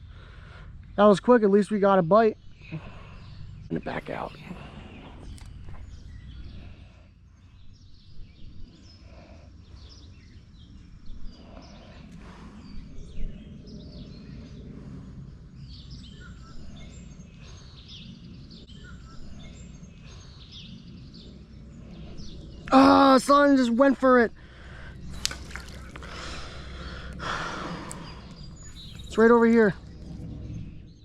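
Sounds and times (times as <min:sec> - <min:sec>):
steady low rumble: 0:00.0 - 0:31.0
bird chirps: 0:15.6 - 0:23.1, 0:25.1 - 0:31.0.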